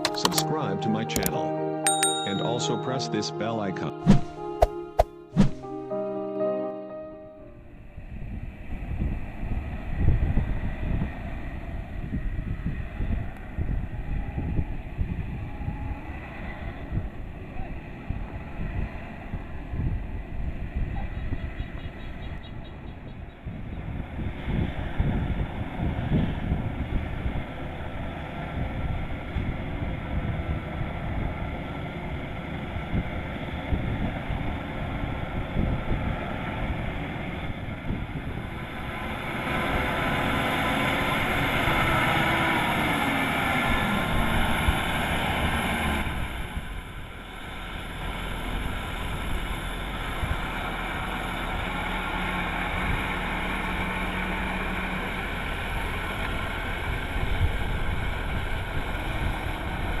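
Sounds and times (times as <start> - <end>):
combine harvester droning: 0.0 - 60.0.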